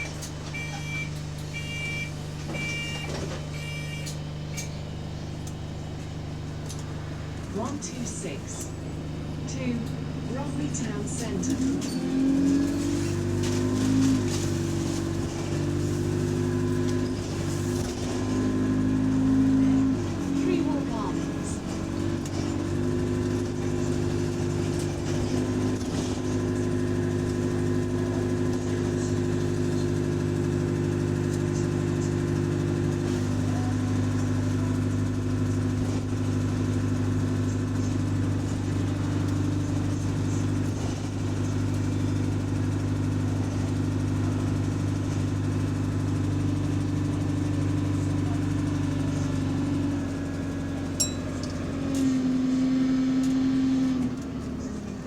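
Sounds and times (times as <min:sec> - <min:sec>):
bus engine droning: 0:00.0 - 0:55.0.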